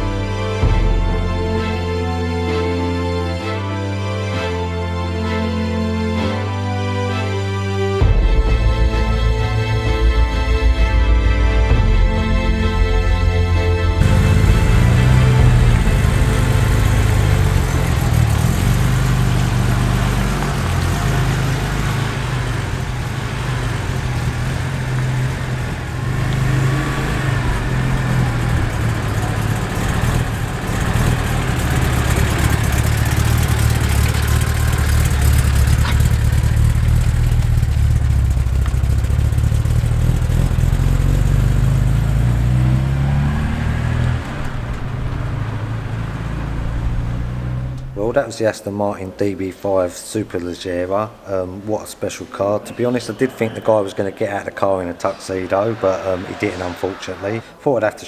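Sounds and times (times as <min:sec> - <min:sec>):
car engine revving: 0:08.0 - 0:48.3, 0:53.1 - 0:57.6.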